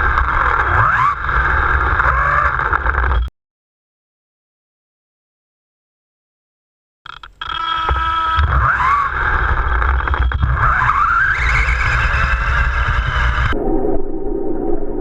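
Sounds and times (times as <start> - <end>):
electric motor whining: 7.1 - 13.6.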